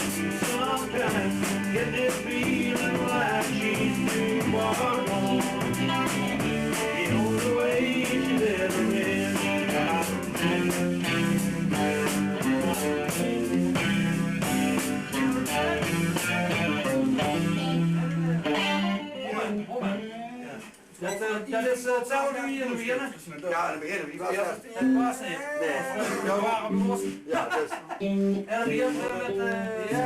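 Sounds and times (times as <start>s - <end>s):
rock band playing: 0.0s - 20.4s, 25.9s - 27.4s, 28.0s - 30.0s.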